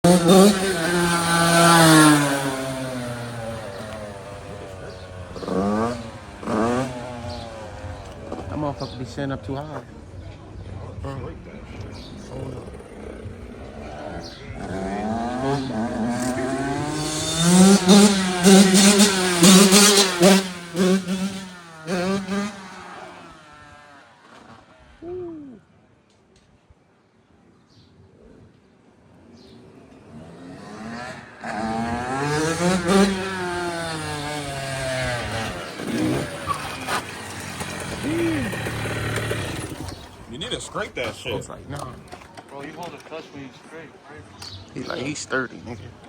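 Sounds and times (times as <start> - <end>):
dirt bike engine revving: 0.0 - 9.6, 12.2 - 25.0, 30.0 - 41.0.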